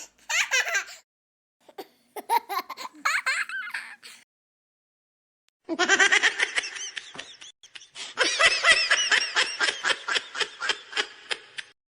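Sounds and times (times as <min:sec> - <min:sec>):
child laughing: 0:00.3 - 0:01.0, 0:01.7 - 0:04.2.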